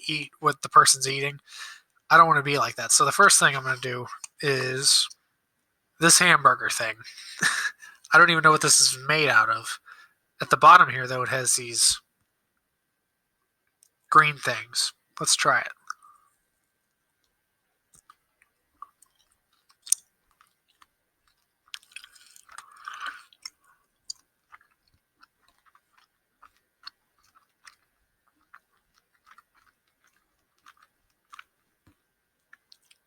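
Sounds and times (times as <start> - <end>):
close chewing with mouth clicks: 17.2 - 33.0.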